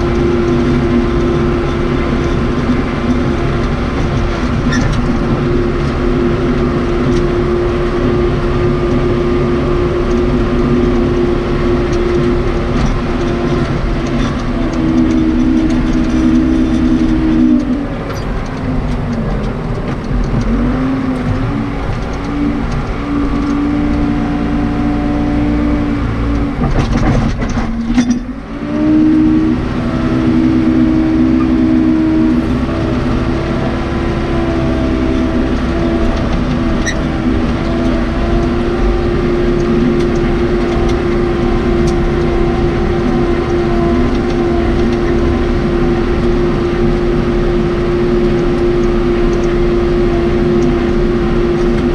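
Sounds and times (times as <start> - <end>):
diesel engine working under load: 0.0 - 51.9
clatter of knocks: 26.6 - 28.3.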